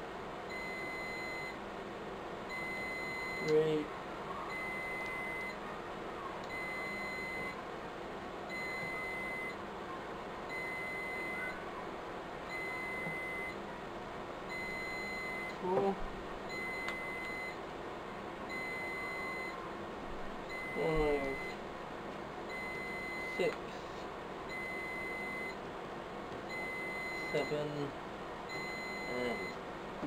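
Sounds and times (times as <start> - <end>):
electronic warning beeps: 0.5 - 1.6, 2.5 - 3.8, 4.5 - 5.6, 6.5 - 7.6, 8.5 - 9.6, 10.5 - 11.6, 12.5 - 13.6, 14.5 - 15.8, 16.5 - 17.6, 18.5 - 19.6, 20.5 - 21.6, 22.5 - 23.6, 24.5 - 25.6, 26.5 - 27.9, 28.5 - 29.6
person speaking: 20.8 - 21.5.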